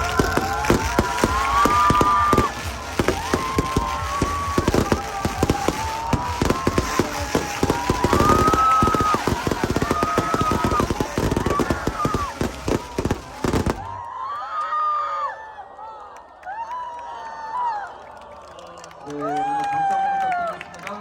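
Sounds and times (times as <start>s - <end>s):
fireworks bangs and crackles: 0.0s - 14.1s.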